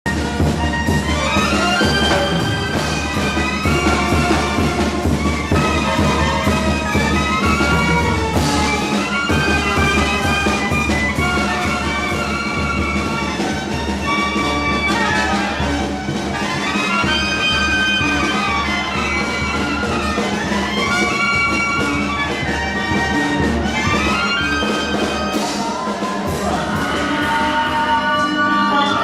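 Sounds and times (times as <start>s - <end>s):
horn melody over bass line: 0.1s - 29.0s.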